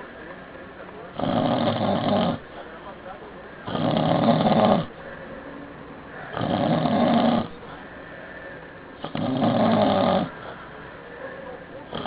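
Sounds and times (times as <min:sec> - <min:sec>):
rasping snore: 0:01.1 - 0:02.6, 0:03.6 - 0:05.0, 0:06.3 - 0:07.8, 0:09.0 - 0:10.6.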